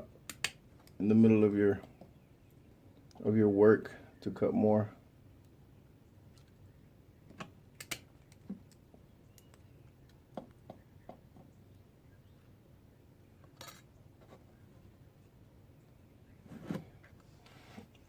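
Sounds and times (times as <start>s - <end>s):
small metal clicks and taps: 7.3s - 8.8s.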